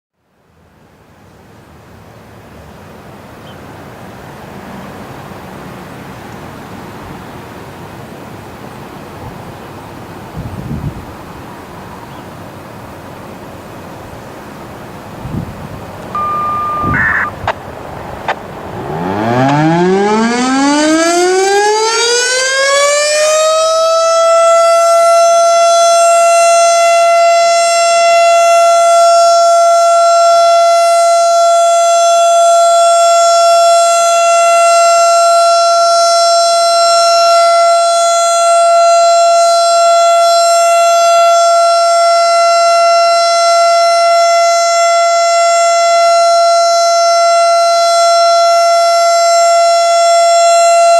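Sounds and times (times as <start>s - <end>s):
warning siren winding up: 16.0s - 17.6s, 18.3s - 50.9s.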